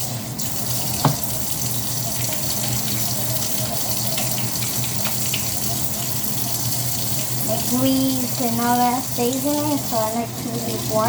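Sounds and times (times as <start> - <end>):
tap running into sink: 0.8 - 1.7
sharp knock: 1.0 - 1.3.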